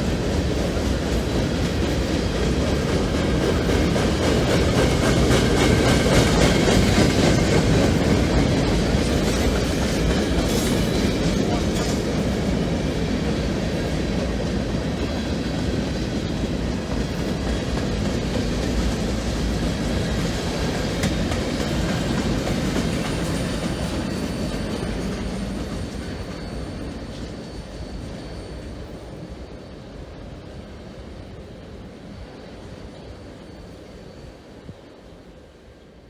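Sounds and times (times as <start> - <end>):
freight train wheel clatter: 0.0 - 29.5
high wheel squeal: 22.5 - 29.3.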